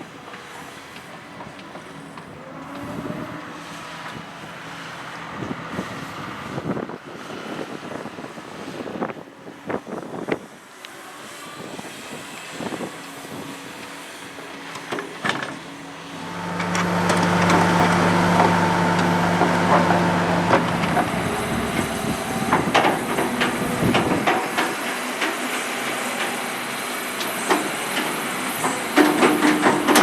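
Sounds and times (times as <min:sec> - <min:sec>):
heavy machine engine running: 0:14.7 - 0:30.0.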